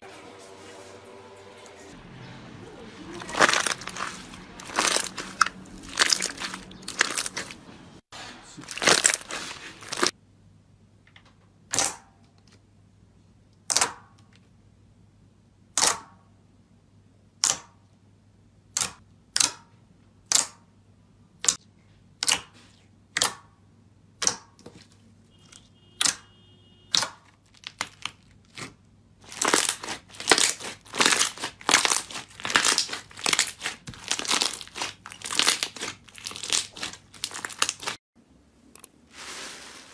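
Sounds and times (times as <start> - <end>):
slime crackling and popping: 3.1 - 7.6, 8.6 - 10.1, 26.9 - 38.0.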